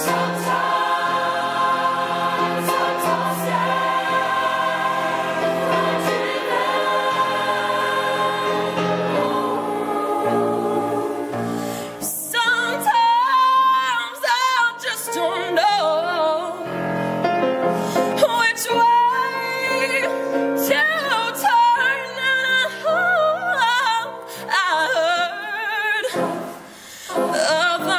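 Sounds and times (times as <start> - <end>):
choir singing held chords: 0.0 - 12.9, 26.0 - 27.9.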